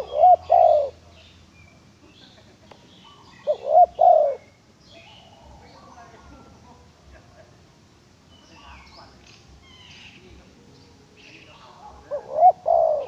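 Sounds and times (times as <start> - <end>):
dove cooing: 0.0 - 1.2, 3.0 - 4.5, 11.8 - 13.0
small birds chirping: 0.0 - 13.0.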